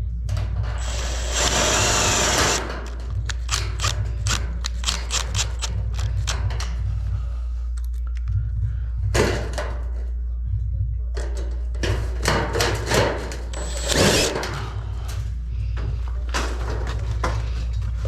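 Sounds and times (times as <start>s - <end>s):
power tool whirring: 0.8s - 2.7s, 13.6s - 14.4s
sharp metallic clicks: 0.8s - 6.4s, 13.5s - 14.4s.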